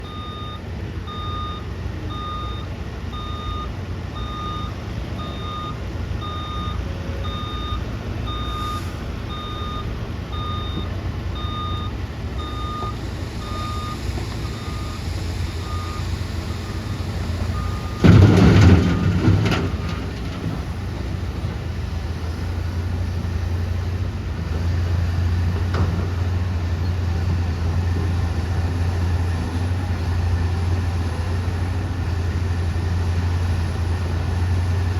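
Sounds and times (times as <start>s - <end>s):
truck reversing alarm beeping: 0.0s - 23.2s
low engine hum: 0.0s - 34.9s
loud burst of noise: 12.9s - 20.1s.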